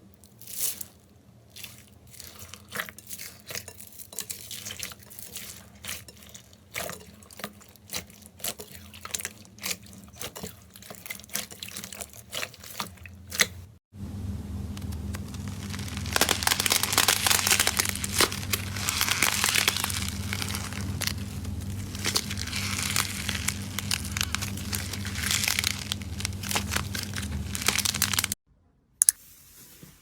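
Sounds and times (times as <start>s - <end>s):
steady low hum: 13.9s - 28.4s
slime squished by hand: 14.8s - 28.4s.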